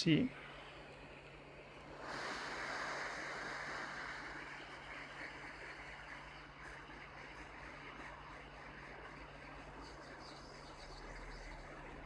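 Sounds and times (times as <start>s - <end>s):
hot air station blowing hiss: 1.7s - 6.1s.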